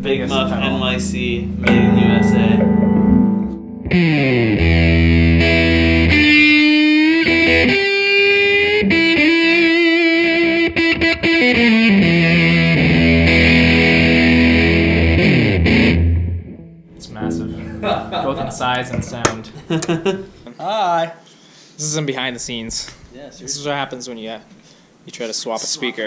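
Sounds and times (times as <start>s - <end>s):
fuzzed electric guitar lead: 0.0s - 7.9s.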